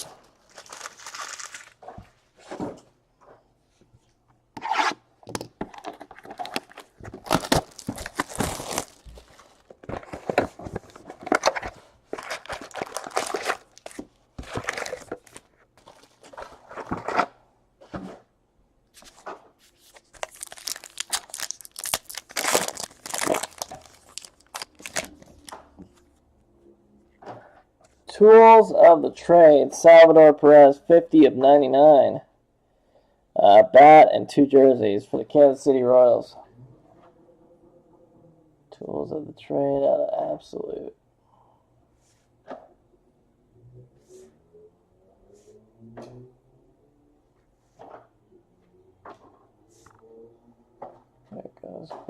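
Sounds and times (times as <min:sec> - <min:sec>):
foil wrappers tearing and crinkling: 0:00.0 - 0:01.8, 0:06.4 - 0:09.7, 0:11.5 - 0:15.4, 0:19.9 - 0:25.5
cards being handled: 0:00.0 - 0:02.0, 0:05.8 - 0:17.2, 0:19.0 - 0:26.0.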